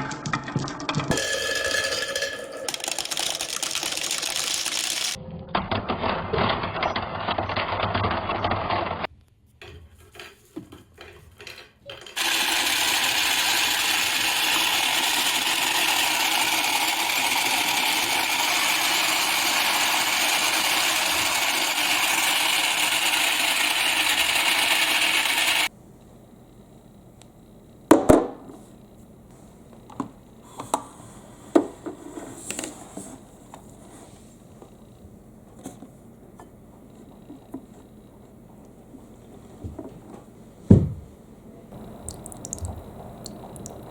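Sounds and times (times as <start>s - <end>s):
marbles churning in water: 0.0s - 5.2s
washing machine whirring: 0.0s - 5.2s, 9.7s - 43.9s
marbles clicking together: 2.2s - 5.2s.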